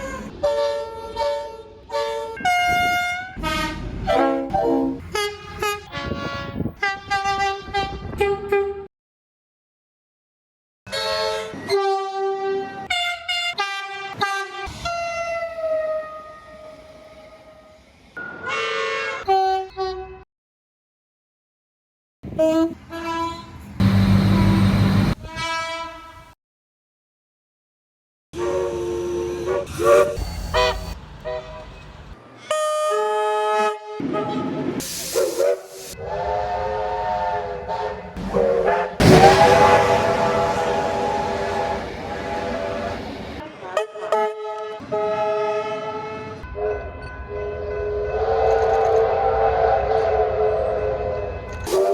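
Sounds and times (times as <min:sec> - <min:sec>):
train horn blasts: 0:00.4 - 0:08.6, 0:10.9 - 0:17.6, 0:18.4 - 0:19.4, 0:22.9 - 0:26.4, 0:36.0 - 0:46.4, 0:47.9 - 0:51.3
burst of hiss: 0:39.0 - 0:43.3.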